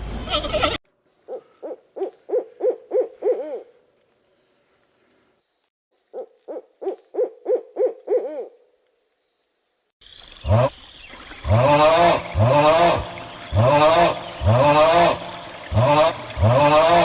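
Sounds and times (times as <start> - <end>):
owl hooting: 1.3 - 3.8, 6.1 - 8.6.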